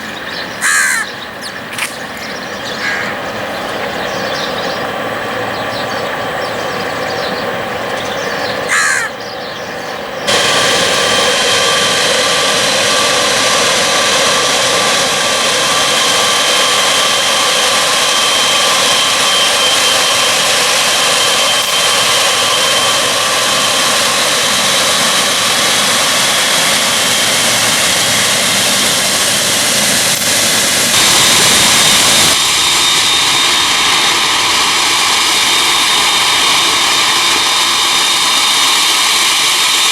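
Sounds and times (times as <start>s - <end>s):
jet engines roaring: 0.0s - 39.9s
crow cawing: 0.4s - 11.3s.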